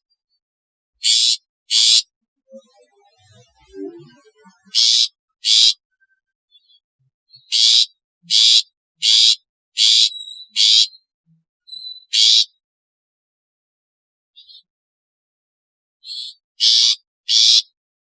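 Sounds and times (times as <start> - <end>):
bird harsh rasping calls: 1.0 - 2.1, 4.7 - 5.8, 7.4 - 11.1, 11.7 - 12.6, 16.1 - 17.7.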